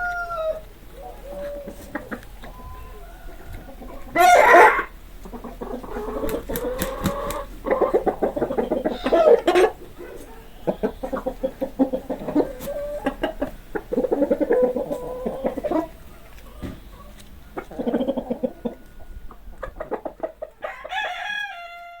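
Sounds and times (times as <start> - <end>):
chicken high-pitched call: 0.0 - 5.0, 8.8 - 9.8
chicken clucking: 0.0 - 22.0.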